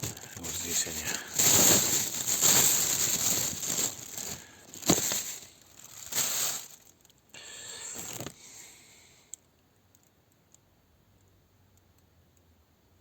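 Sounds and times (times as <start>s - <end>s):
packet rustling and scraping: 0.0s - 7.1s, 7.8s - 8.4s
faint small ticks: 9.3s - 12.5s.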